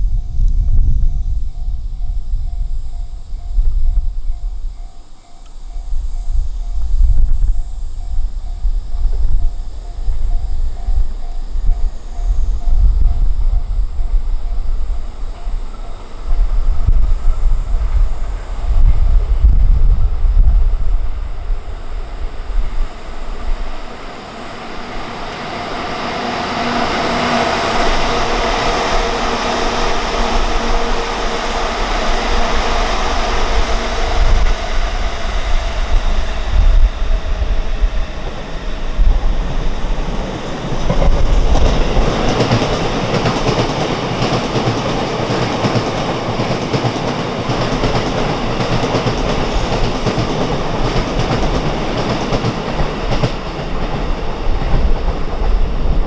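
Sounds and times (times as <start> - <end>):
wheels clicking over rails: 21.6 - 56.0.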